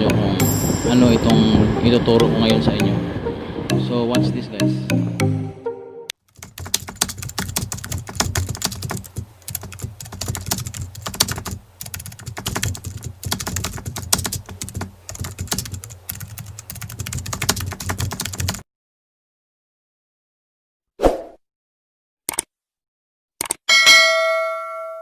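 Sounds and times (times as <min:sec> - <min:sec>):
low hum: 0:00.0 - 0:05.6
keyboard key clicks: 0:06.3 - 0:18.6, 0:23.4 - 0:23.6.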